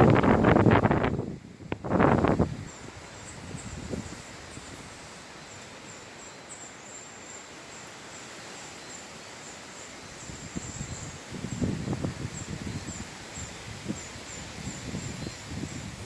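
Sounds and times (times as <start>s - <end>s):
wind rushing through trees: 0.0s - 16.0s.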